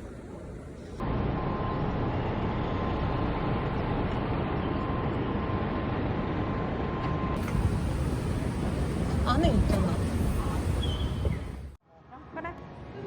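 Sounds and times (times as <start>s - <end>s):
moving vehicle rumbling: 7.4s - 11.8s.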